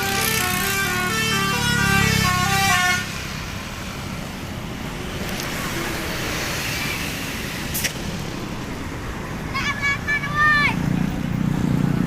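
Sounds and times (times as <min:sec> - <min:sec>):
bus horn tune: 0:00.0 - 0:03.2
road traffic noise: 0:00.0 - 0:12.0.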